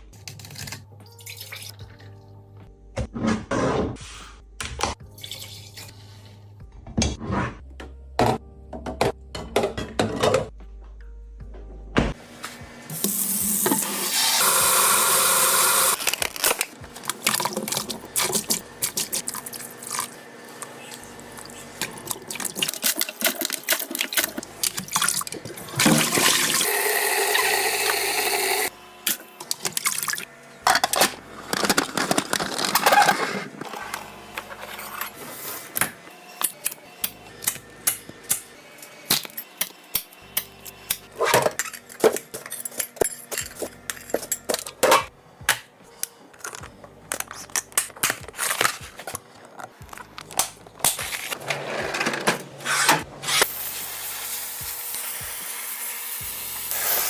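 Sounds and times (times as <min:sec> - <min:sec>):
liquid pouring into containers: 0:01.2 - 0:02.0.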